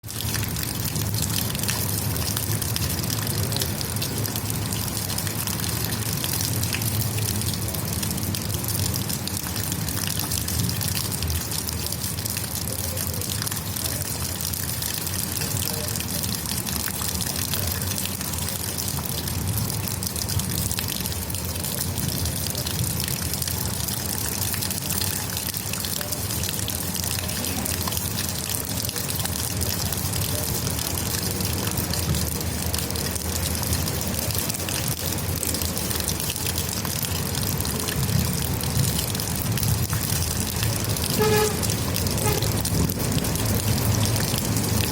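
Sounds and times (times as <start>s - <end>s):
rainwater trickling and splashing: 0.0s - 44.9s.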